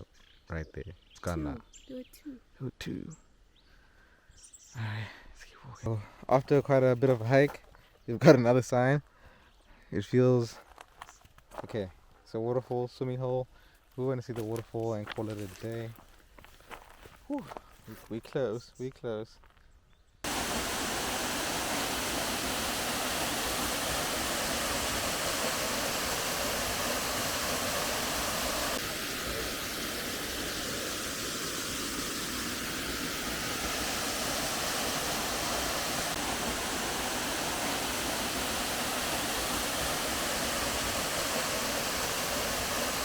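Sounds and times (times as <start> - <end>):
waterfall rushing: 20.3 - 43.0.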